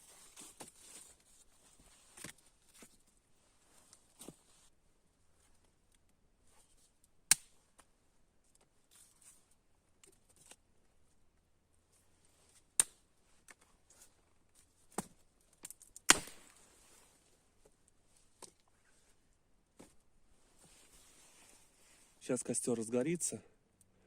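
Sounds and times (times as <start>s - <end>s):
burning wood popping: 15.6s - 16.6s.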